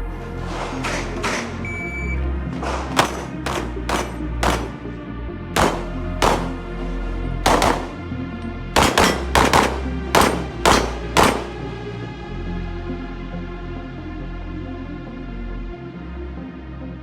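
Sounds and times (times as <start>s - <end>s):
background music: 0.0s - 17.0s
handgun shots: 2.6s - 5.0s, 5.6s - 6.8s, 7.5s - 8.2s, 8.8s - 11.8s.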